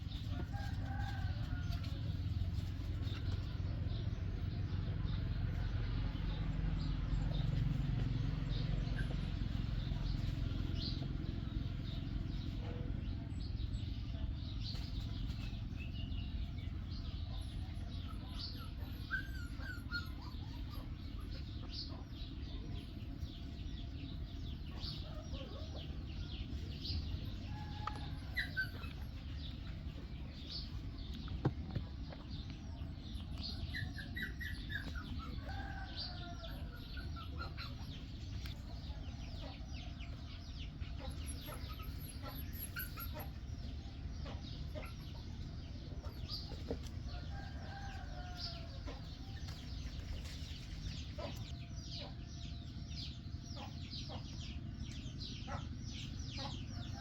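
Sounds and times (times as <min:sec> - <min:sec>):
birds chirping: 0:00.0 - 0:57.0
steady low rumble: 0:20.1 - 0:57.0.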